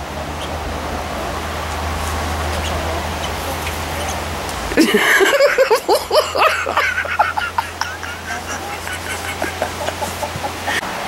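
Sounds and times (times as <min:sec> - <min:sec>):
low rumble and hiss: 0:00.0 - 0:11.0
poultry calling: 0:01.7 - 0:04.7.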